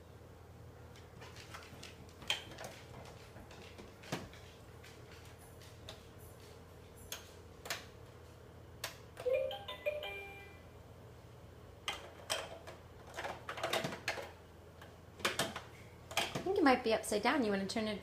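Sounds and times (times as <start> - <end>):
plastic clicks and clacks: 11.9 - 16.5.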